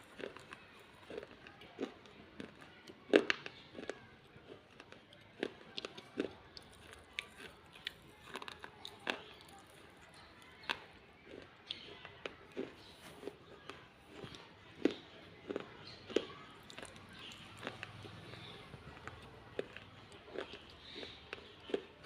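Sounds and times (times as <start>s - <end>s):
person chewing crunchy clay: 0.0s - 22.0s.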